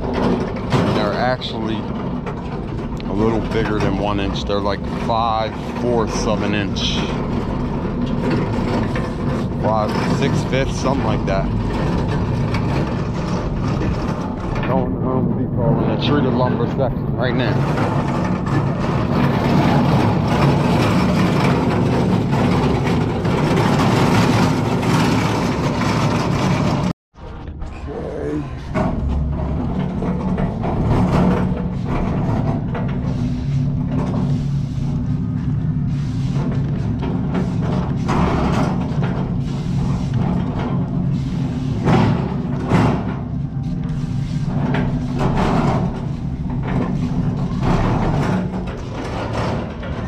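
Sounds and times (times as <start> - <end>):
road noise rush: 0.0 - 26.9.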